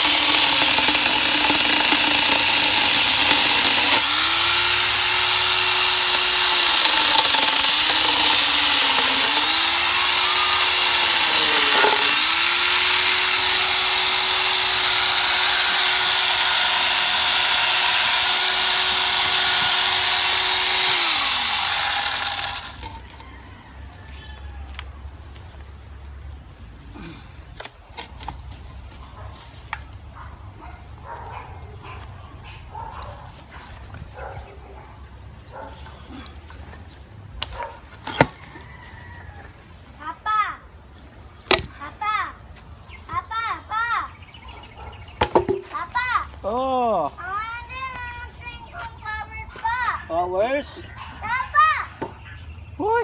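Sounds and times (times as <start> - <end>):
angle grinder chainsaw cutting wood: 0.0 - 23.3.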